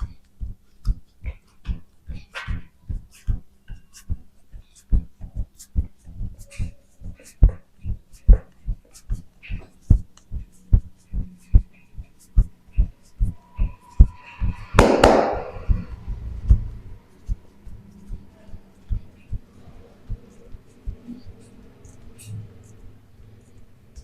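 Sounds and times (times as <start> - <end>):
rhythmic low thumps: 0.0 - 22.2
loud sharp crack: 14.8 - 15.6.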